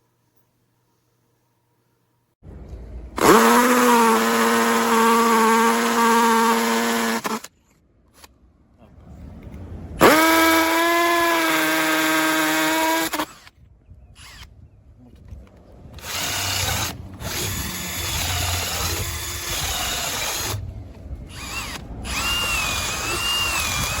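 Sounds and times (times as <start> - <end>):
cordless drill whining: 3.2 - 7.5, 10.0 - 13.5, 16.0 - 20.6, 21.3 - 24.0.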